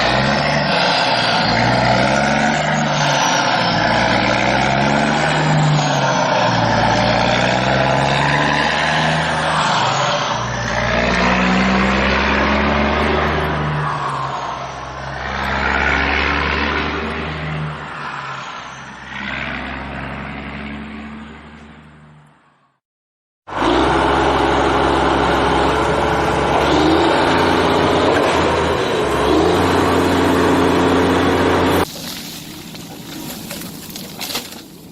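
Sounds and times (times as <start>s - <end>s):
vehicle engine running loud: 23.5s - 33.6s.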